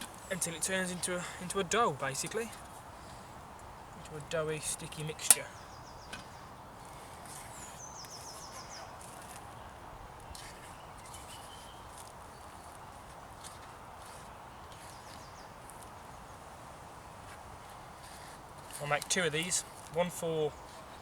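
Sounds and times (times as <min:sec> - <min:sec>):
small birds chirping: 0:00.0 - 0:21.0
woodland ambience hiss: 0:00.0 - 0:21.0.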